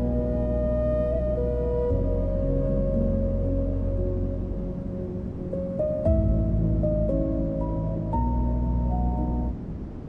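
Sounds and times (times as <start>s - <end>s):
slow medieval-style ambient music: 0.0s - 10.0s.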